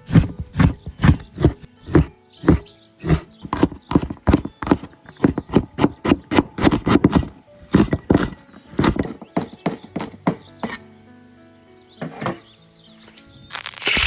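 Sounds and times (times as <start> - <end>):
knife chopping on cutting board: 0.0 - 10.8.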